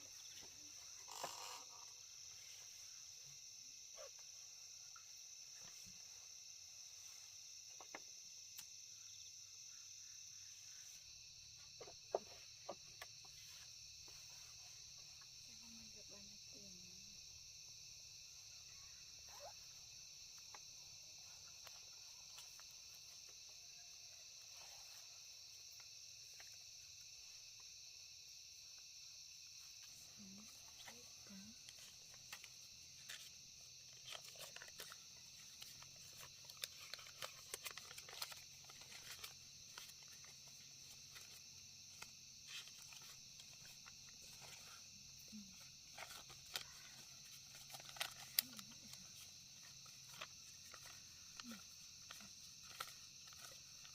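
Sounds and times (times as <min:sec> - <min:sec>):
insects chirring: 0:00.0 - 0:53.9
clicks and rustles: 0:29.8 - 0:44.9, 0:45.5 - 0:53.9.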